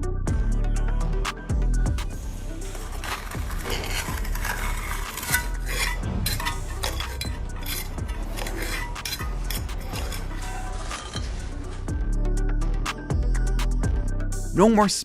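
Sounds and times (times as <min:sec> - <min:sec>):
hand tools scraping and clinking: 0:02.5 - 0:12.0.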